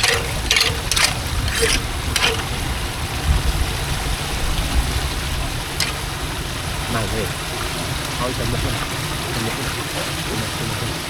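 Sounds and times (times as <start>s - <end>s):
low rumble of moving water: 1.2s - 11.0s
splashes in floodwater: 2.7s - 11.0s.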